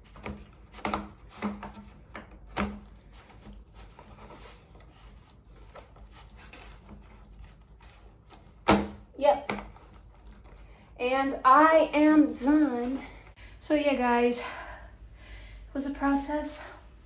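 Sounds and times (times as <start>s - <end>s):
rubbing and handling noise: 0.0s - 13.4s.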